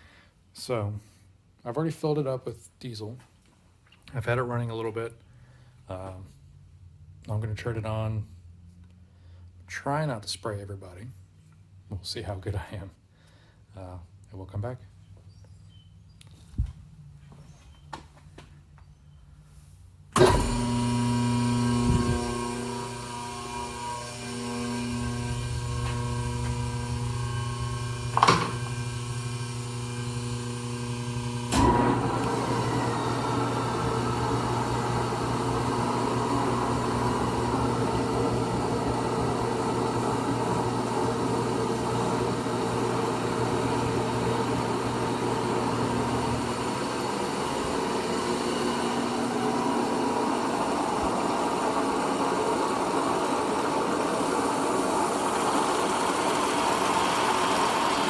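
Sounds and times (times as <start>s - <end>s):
electrical hum: 20.2s - 56.2s
lathe gear whine: 20.2s - 58.0s
lathe gear head clunk: 28.1s - 28.8s.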